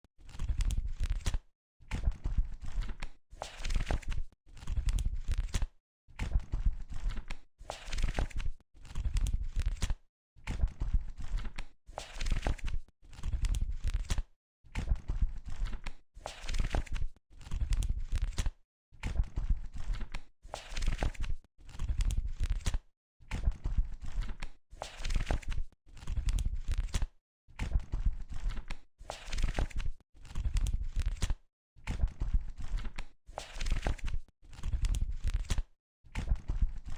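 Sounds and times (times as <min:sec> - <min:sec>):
book pages turning: 0:28.4 - 0:31.3, 0:32.7 - 0:35.6.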